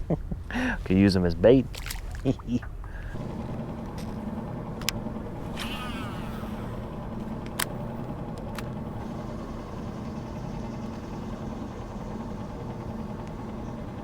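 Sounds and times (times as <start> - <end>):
motor humming: 1.7 - 14.0
short warbling sound: 5.4 - 7.3
sharp clicks: 5.6 - 8.8.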